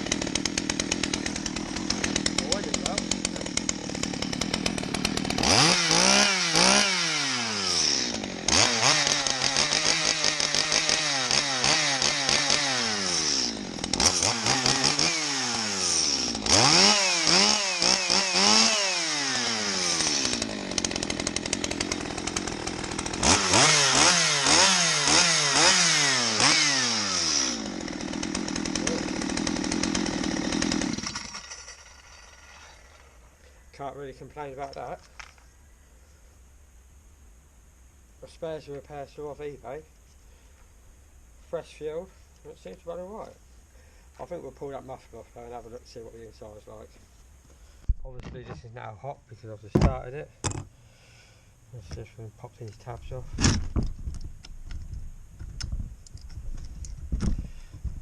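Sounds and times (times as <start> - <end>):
chainsaw engine revving and idling: 0.0 - 33.3.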